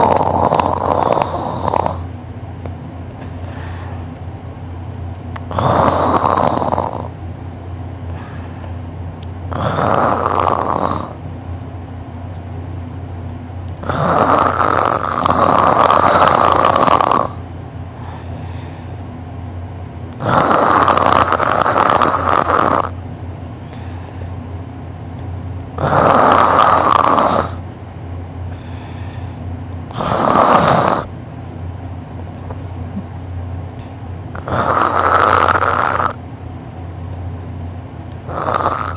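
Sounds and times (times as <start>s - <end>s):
man snoring loudly: 0.0s - 2.0s, 5.5s - 7.1s, 9.5s - 11.2s, 13.8s - 17.4s, 20.2s - 23.0s, 25.8s - 27.6s, 29.9s - 31.1s, 34.4s - 36.2s, 38.2s - 38.9s
faint low hum: 0.0s - 38.9s.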